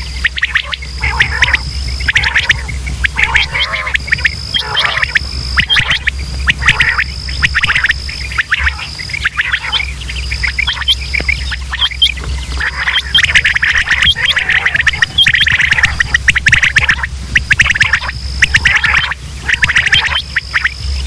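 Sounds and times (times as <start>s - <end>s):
low hum: 0.0s - 21.0s
quail chirping: 0.0s - 21.0s
thin steady high tone: 0.0s - 21.0s.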